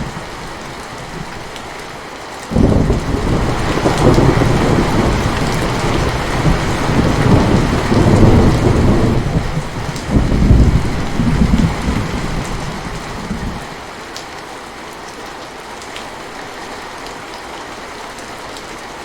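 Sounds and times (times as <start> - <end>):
steady rain: 0.0 - 19.0
rolling thunder rumble: 2.5 - 13.8.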